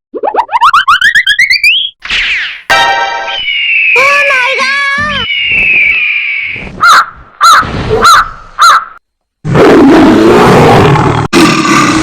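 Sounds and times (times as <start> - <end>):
cawing calls: 4.6 - 9.0.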